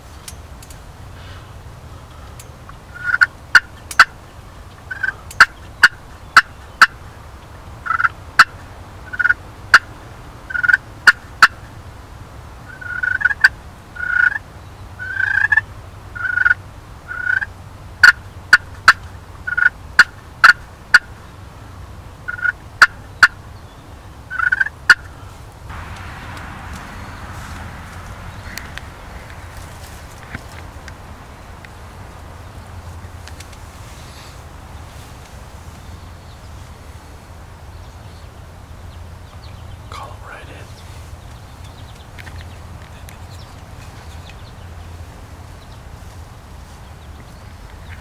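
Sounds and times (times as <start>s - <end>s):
turkey yelping and clucking: 3.0s - 4.2s, 4.9s - 7.0s, 22.3s - 23.4s, 24.3s - 25.2s.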